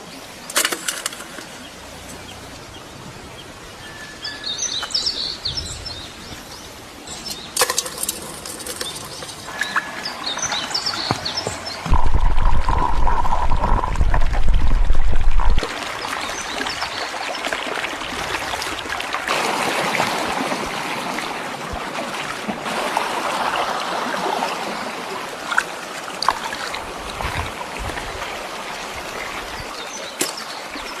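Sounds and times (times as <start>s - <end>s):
shallow water trickling: 7.1s - 19.0s.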